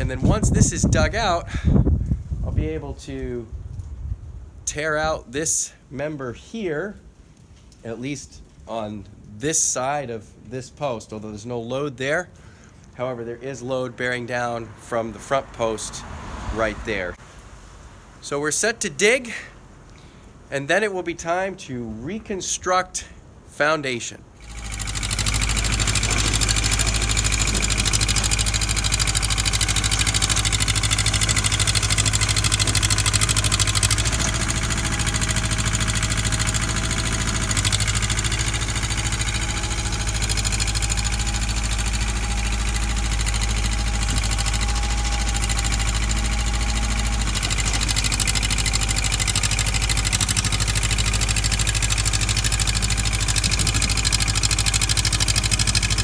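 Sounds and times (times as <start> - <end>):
digging machine engine idling: 24.4 - 56.0.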